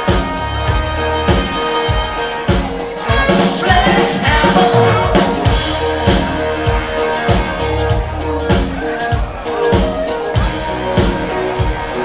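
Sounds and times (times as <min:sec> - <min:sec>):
drum kit beat: 0:00.0 - 0:12.0
person singing: 0:02.8 - 0:12.0.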